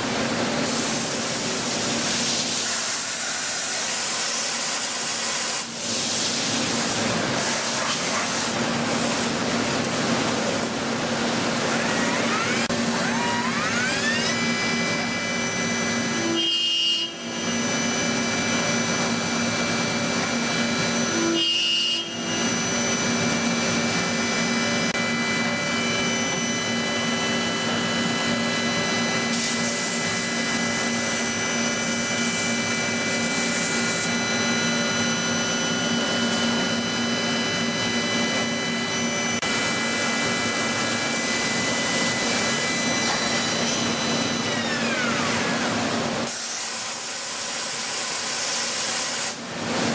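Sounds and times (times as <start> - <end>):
machine spindle whine: 0.0 - 49.9
machining noise: 11.4 - 16.4.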